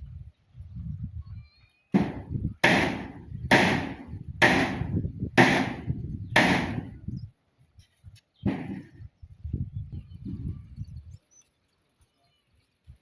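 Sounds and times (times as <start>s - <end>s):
sharp heavy ringing strikes: 2.0s - 6.9s.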